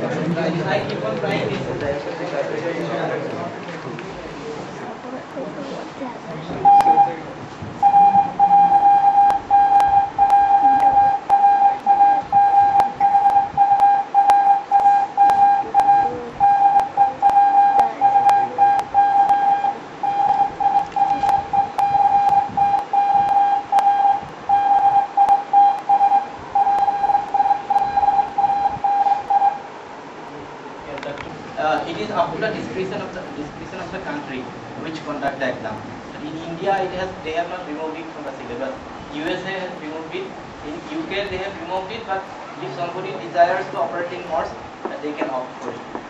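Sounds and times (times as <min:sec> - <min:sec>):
morse code beep tone: 0:06.6 - 0:07.2, 0:07.8 - 0:29.6.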